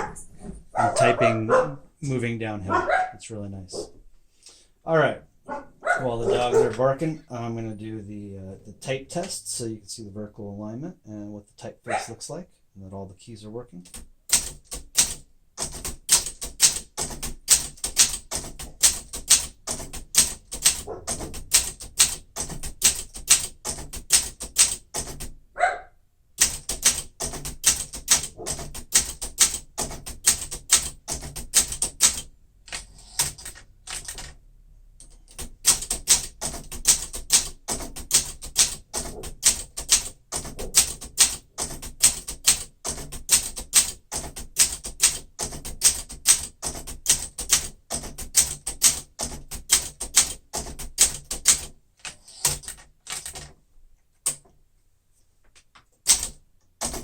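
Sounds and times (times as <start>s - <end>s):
typewriter typing: 0.9s - 1.2s, 13.8s - 25.4s, 26.4s - 34.4s, 35.0s - 53.6s, 56.0s - 57.0s.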